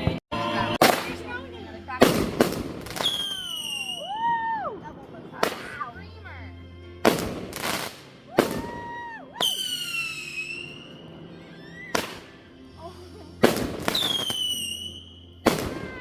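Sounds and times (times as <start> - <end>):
fireworks bangs: 0.8 - 1.3, 2.0 - 4.4, 7.0 - 11.1, 11.9 - 12.4, 13.4 - 16.0
firework high whistle: 2.9 - 4.7, 7.5 - 12.5, 13.4 - 16.0.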